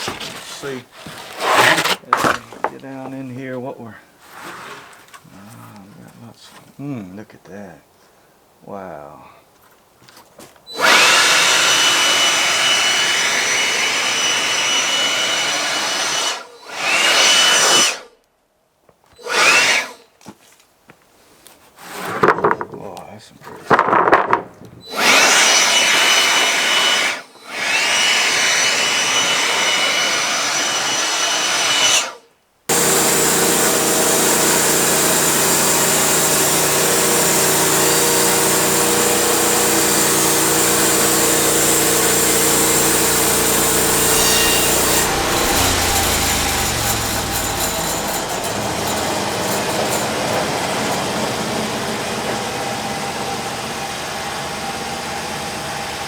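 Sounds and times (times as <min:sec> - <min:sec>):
saw cutting through log: 0:00.0 - 0:03.3, 0:10.7 - 0:18.1, 0:19.2 - 0:20.1, 0:24.9 - 0:53.1
sawmill engine running under load: 0:10.7 - 0:17.7, 0:24.9 - 0:32.1, 0:32.7 - 0:56.0.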